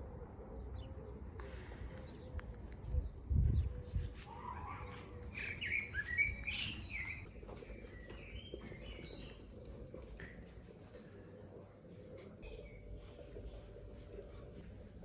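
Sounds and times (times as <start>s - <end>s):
small birds chirping: 2.0s - 11.8s.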